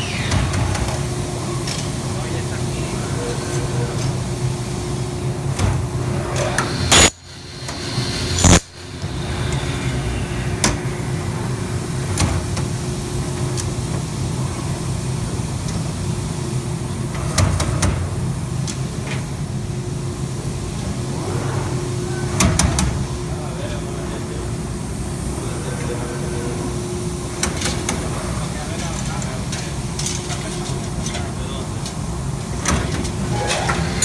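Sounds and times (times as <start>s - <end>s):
machine humming: 0.0s - 13.6s.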